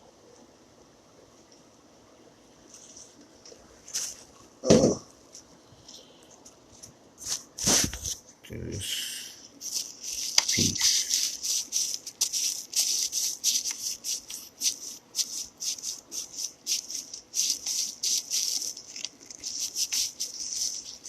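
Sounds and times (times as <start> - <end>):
quick rubbing strokes: 7.2 - 8.3, 9.4 - 21.0.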